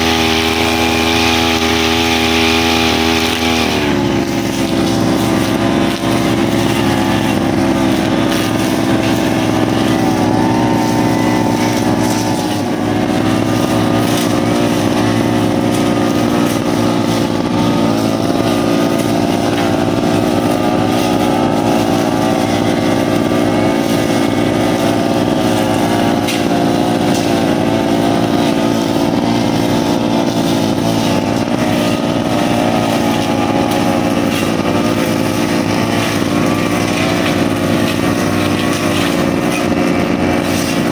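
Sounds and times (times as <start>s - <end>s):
brushcutter engine running: 0.0s - 40.9s.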